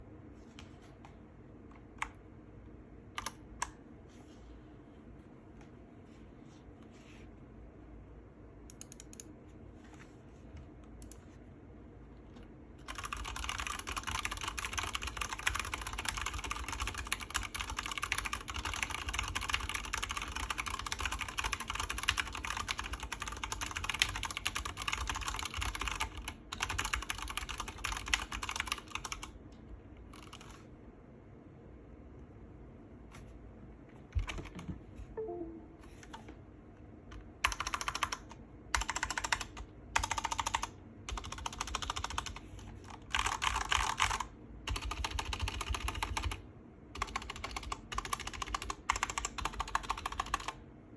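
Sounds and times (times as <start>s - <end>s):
mechanical keyboard typing: 3.2s - 3.8s, 12.8s - 29.4s, 30.1s - 30.6s, 34.1s - 36.2s, 37.1s - 50.6s.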